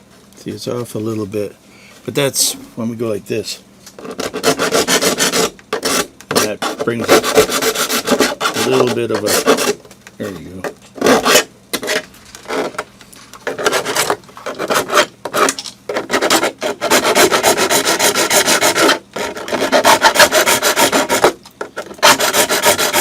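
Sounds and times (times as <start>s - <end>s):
hand file rasping on plastic: 4.0s - 9.8s, 11.0s - 23.0s.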